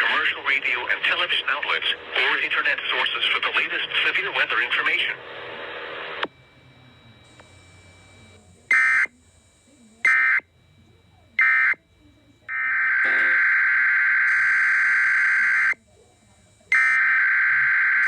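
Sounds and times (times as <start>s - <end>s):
digital data tone bursts: 12.5s - 15.8s.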